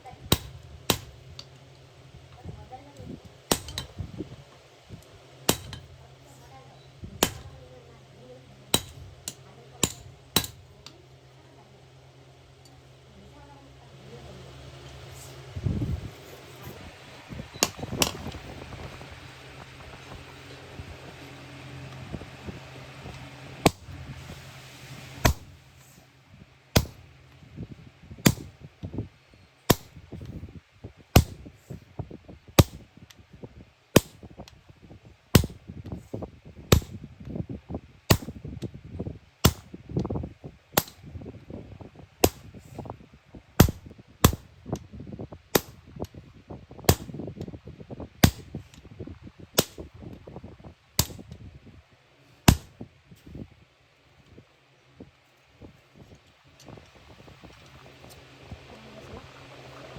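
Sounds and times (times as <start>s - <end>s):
hammer striking iron: 0.3s - 1.5s, 3.5s - 4.0s, 5.5s - 5.9s, 7.2s - 7.5s, 8.7s - 11.0s, 25.2s - 25.5s, 26.8s - 27.1s, 28.2s - 28.5s, 29.7s - 30.0s, 31.2s - 31.4s, 32.6s - 32.8s, 35.4s - 35.6s, 36.7s - 37.0s, 38.1s - 38.4s, 39.4s - 39.7s, 40.8s - 41.0s, 42.2s - 42.5s, 43.6s - 44.5s, 45.6s - 45.8s, 46.9s - 47.2s, 51.0s - 51.2s, 52.5s - 52.8s.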